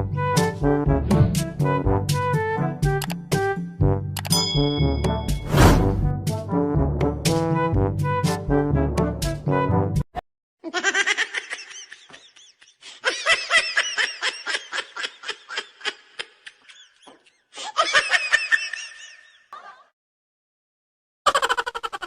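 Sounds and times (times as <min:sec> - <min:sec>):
high-pitched laughter: 0:10.6 - 0:19.9, 0:21.3 - 0:22.0.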